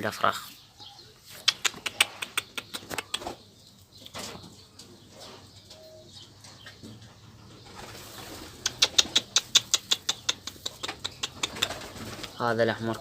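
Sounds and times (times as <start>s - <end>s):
pigeon wings flapping: 11.0s - 12.4s.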